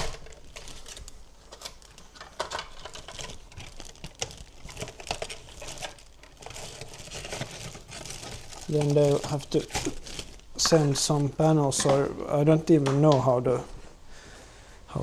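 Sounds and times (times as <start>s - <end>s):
packaging rustling: 0.0s - 14.1s
light clicks and knocks: 9.1s - 13.7s.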